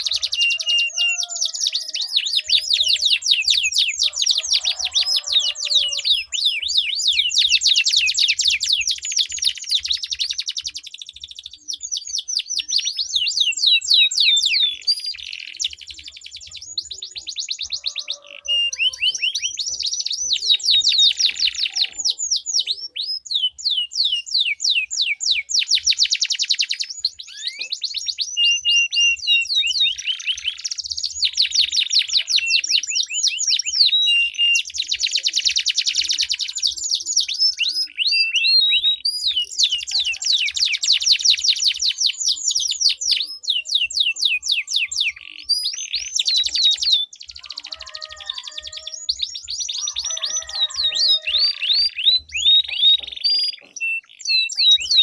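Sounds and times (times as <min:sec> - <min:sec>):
canaries singing trills: 0:00.0 - 0:55.0.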